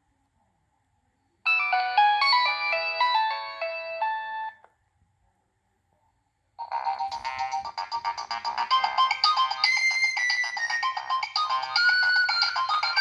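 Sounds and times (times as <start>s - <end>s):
phone ringtone melody: 1.5s - 4.6s, 6.6s - 13.0s.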